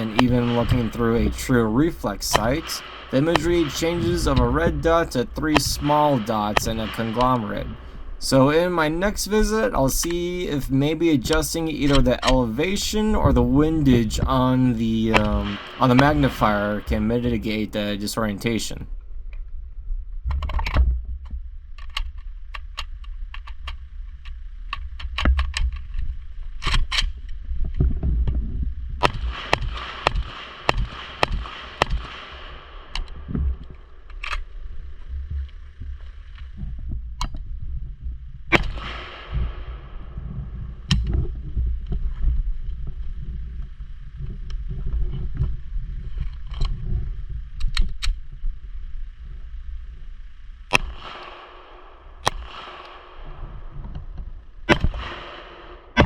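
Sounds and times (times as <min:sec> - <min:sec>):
rifle shots: 0:00.0 - 0:18.7, 0:29.0 - 0:35.0, 0:38.5 - 0:40.7, 0:50.7 - 0:56.0
steady low rumble: 0:00.0 - 0:56.0.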